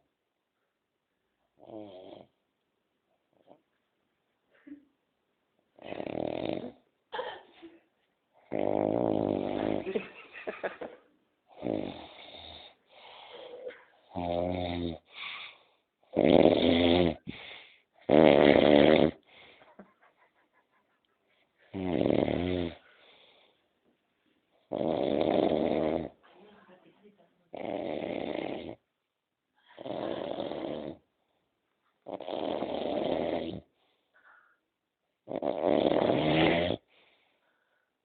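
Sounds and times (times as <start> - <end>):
loud rasping snoring: 1.6 - 2.3, 5.8 - 6.8, 8.4 - 10.0, 11.5 - 12.8, 14.1 - 15.1, 16.1 - 19.2, 21.7 - 22.8, 24.7 - 26.2, 27.5 - 28.8, 29.8 - 31.0, 32.0 - 33.7, 35.2 - 36.9.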